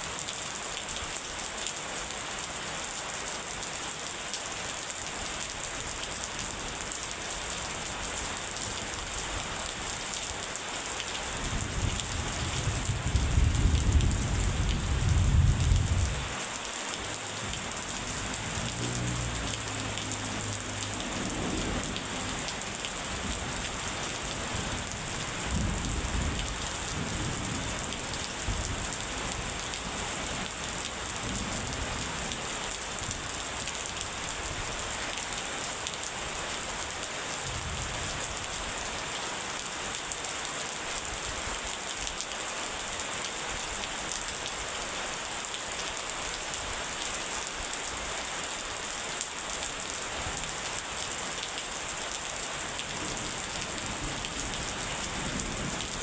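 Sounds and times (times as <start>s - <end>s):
steady rain falling: 0.0s - 56.0s
low thunder rumbling: 11.6s - 16.4s, 20.2s - 28.9s.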